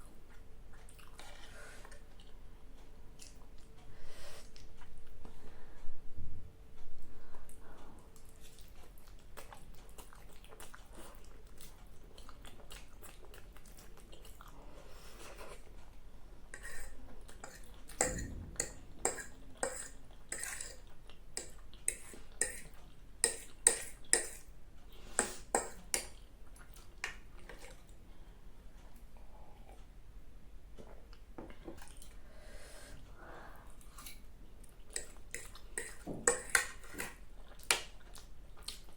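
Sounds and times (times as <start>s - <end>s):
close chewing of noodles: 0.2s - 2.5s, 8.2s - 15.8s, 33.5s - 38.9s.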